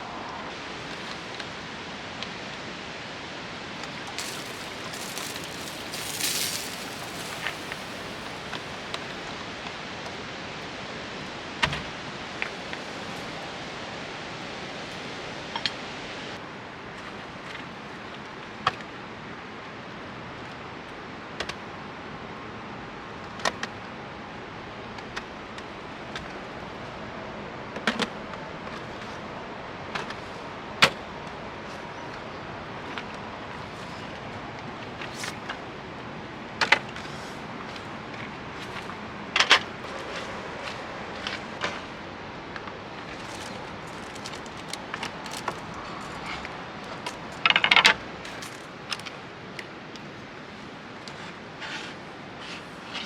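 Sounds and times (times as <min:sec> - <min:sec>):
steady hiss: 0:03.8 - 0:09.7.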